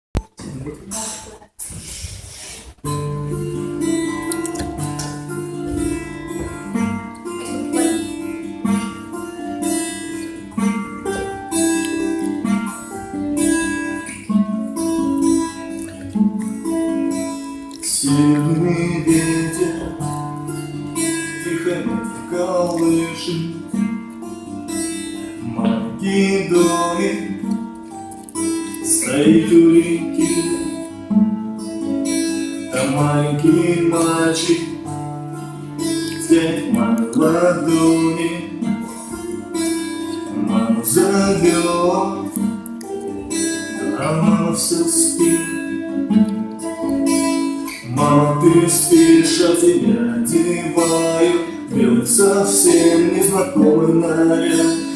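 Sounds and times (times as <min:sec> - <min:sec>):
strummed acoustic guitar: 0:00.2 - 0:54.9
person singing: 0:07.3 - 0:08.4, 0:17.7 - 0:20.4, 0:21.1 - 0:23.7, 0:25.4 - 0:27.6, 0:28.5 - 0:31.0, 0:32.7 - 0:34.9, 0:35.9 - 0:45.9, 0:47.7 - 0:54.9.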